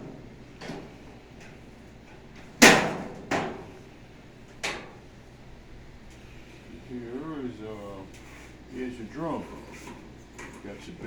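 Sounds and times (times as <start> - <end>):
sharp knocks from dryer cabinet: 2.6 - 3.7.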